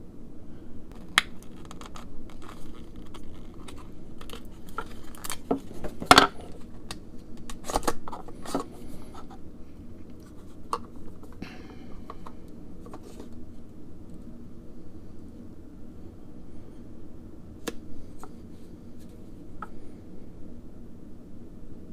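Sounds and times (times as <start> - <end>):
small objects scraping: 1.0 - 6.7.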